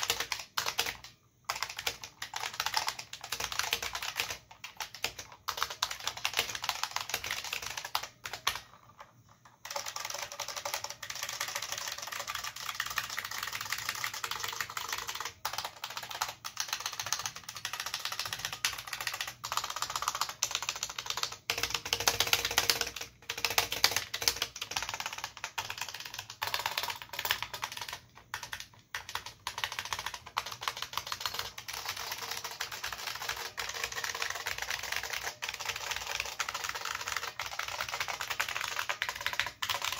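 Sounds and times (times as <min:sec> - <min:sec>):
keyboard keys clacking: 0:09.6 - 0:39.9.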